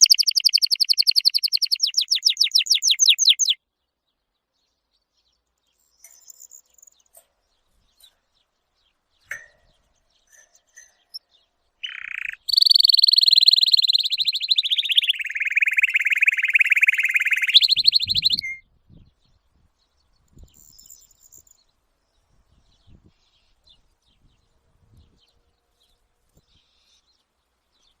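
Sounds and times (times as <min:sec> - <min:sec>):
bird chirping and trilling: 0:00.0 - 0:03.6, 0:10.2 - 0:18.6.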